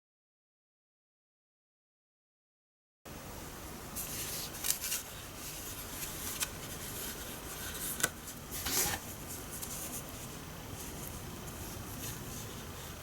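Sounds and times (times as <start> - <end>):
steady background hiss: 3.1 - 13.0.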